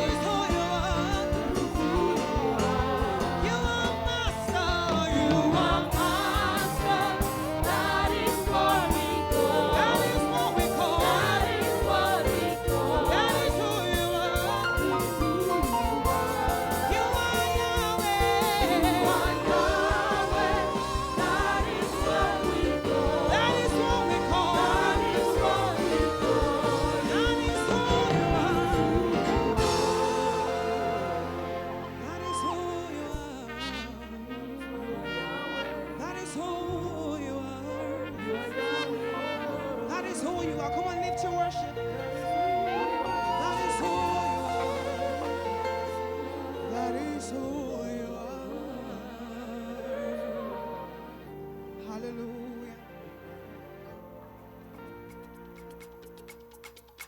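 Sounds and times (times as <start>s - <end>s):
steady drum beat: 0.0s - 32.0s
voices singing gospel music: 0.0s - 55.9s.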